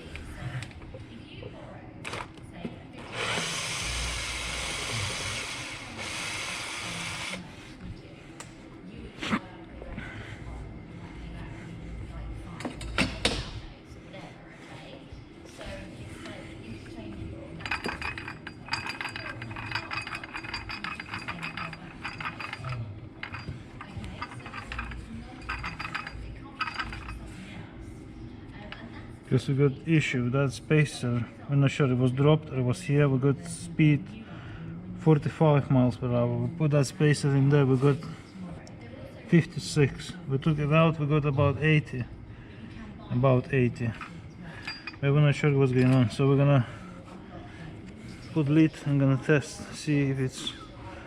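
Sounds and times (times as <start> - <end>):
compressed air hissing: 3.2 - 7.5.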